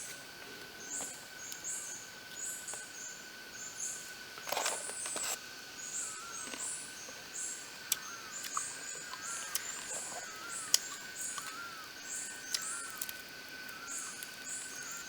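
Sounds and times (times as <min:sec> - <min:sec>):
high insect drone: 0:00.0 - 0:15.0.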